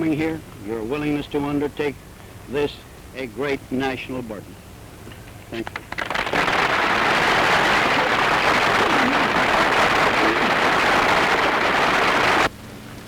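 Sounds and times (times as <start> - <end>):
audience applauding: 5.6 - 12.5.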